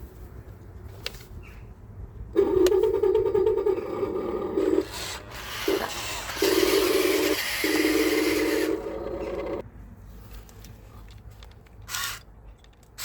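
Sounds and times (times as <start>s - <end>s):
electric motors whining: 2.4s - 9.6s.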